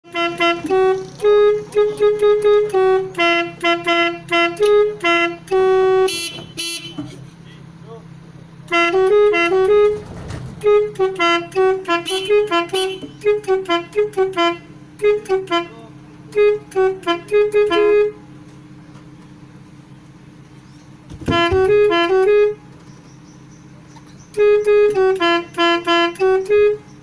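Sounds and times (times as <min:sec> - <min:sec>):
multi-tone musical air horn: 0:00.0 - 0:07.1, 0:08.6 - 0:18.4, 0:21.1 - 0:22.7, 0:24.3 - 0:27.0
steady low hum: 0:00.1 - 0:27.0.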